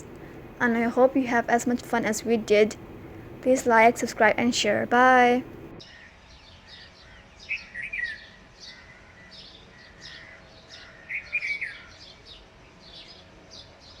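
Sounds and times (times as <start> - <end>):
birds chirping: 0.0 - 5.9.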